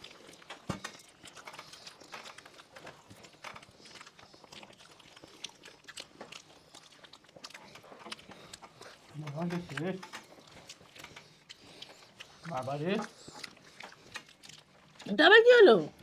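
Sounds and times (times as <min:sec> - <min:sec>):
people eating with lip smacks: 0:00.0 - 0:15.2.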